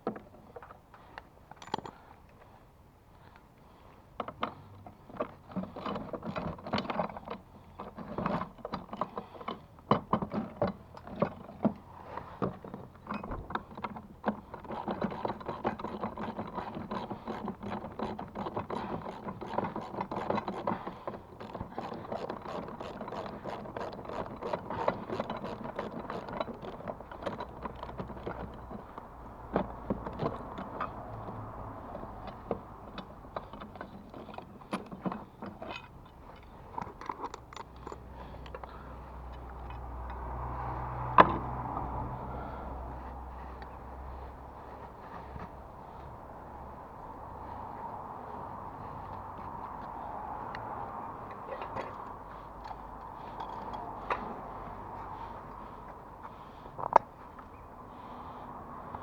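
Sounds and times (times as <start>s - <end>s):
hand tool ratcheting on metal: 13.6s - 28.6s.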